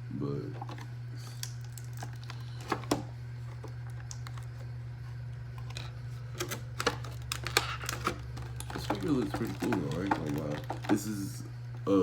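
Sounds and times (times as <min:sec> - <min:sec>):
steady low hum: 0:00.0 - 0:12.0
plastic and cardboard box clicks: 0:06.4 - 0:11.0.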